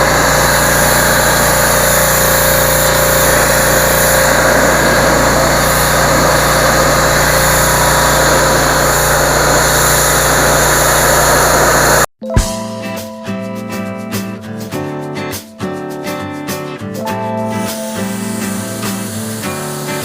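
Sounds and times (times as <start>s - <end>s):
pressure washer engine running: 0.0s - 12.1s, 17.4s - 20.0s.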